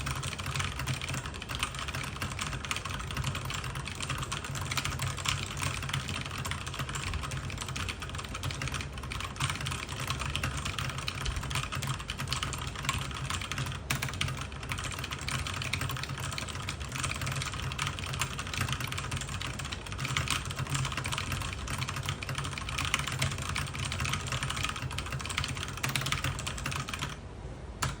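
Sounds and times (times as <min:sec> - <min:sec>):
fast typing on mechanical keyboard: 0:00.0 - 0:27.2, 0:27.8 - 0:28.0.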